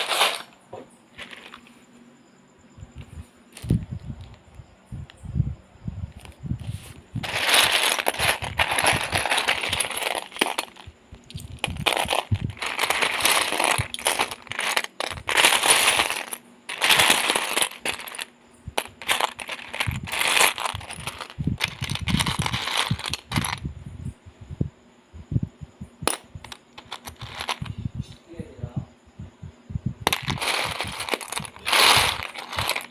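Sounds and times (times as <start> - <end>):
plastic pieces rattling: 0.0 - 0.6, 1.2 - 1.6, 7.2 - 23.6, 26.1 - 27.7, 30.1 - 32.9.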